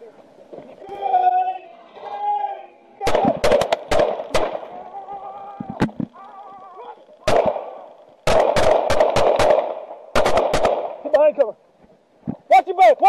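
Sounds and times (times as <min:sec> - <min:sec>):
gunshots: 0:03.0 - 0:04.8, 0:07.2 - 0:11.3.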